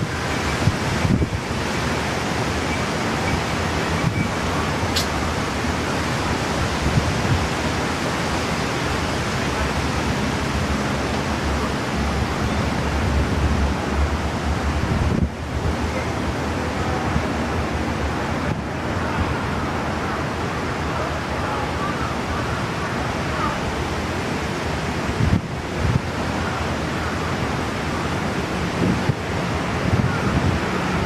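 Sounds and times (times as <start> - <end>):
wind buffeting microphone: 0.0 - 21.9, 22.6 - 31.0
wind and rain rushing: 0.0 - 31.0.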